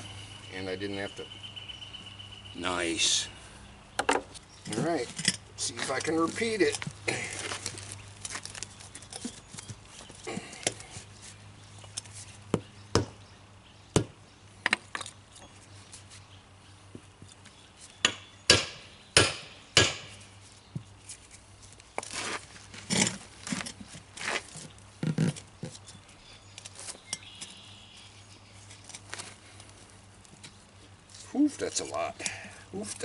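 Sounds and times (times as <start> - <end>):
scraping and handling noise: 4.1 - 12.4, 20.8 - 27.5
hammer striking wood block: 18.0 - 20.1.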